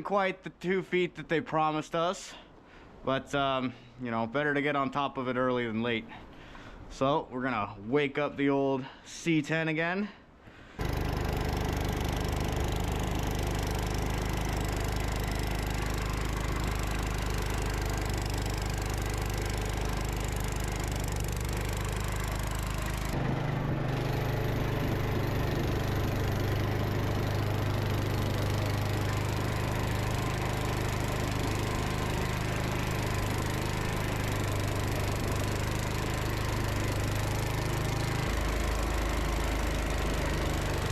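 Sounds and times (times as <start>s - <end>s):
tractor engine running: 10.8s - 40.9s.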